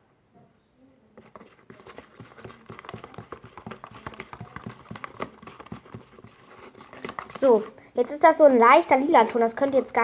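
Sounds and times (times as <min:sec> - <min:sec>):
utensil stirring in a bowl: 0:01.2 - 0:08.4.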